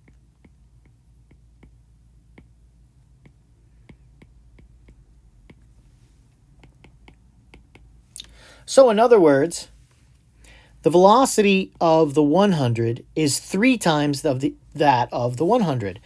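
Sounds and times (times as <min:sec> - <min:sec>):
pen tapping while writing: 0:00.0 - 0:02.6, 0:03.2 - 0:05.8, 0:06.6 - 0:07.9
low steady hum: 0:00.0 - 0:16.0.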